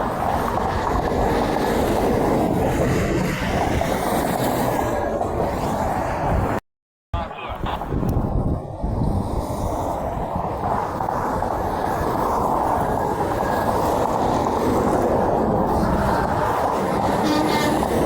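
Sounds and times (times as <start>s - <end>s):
heavy highway traffic: 0.0s - 6.6s, 7.2s - 18.0s
trucks passing: 0.0s - 6.6s, 7.2s - 18.0s.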